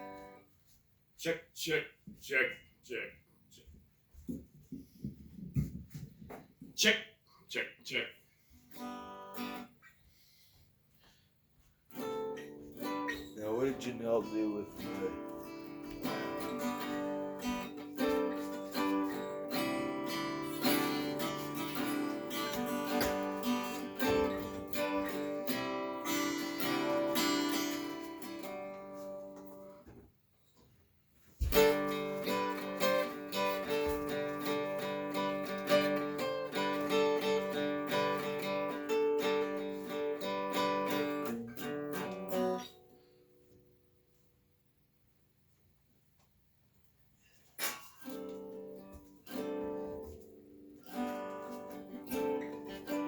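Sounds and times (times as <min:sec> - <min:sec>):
acoustic guitar playing: 0:00.0 - 0:00.5, 0:08.6 - 0:09.8, 0:11.9 - 0:29.9, 0:31.4 - 0:43.2, 0:47.6 - 0:53.0.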